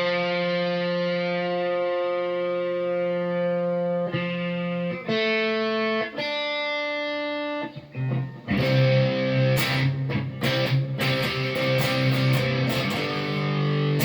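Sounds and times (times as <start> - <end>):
electric guitar chords: 0.0 - 14.0.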